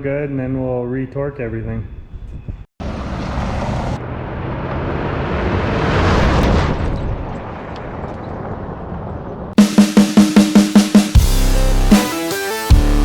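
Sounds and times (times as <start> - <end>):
wind noise: 1.5 - 2.7
tire noise: 2.8 - 9.6.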